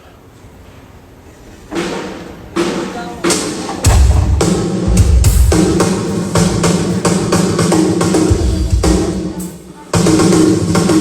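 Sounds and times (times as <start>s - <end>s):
snare drum hits: 1.7s - 7.1s
drum kit steady beat: 1.7s - 11.0s.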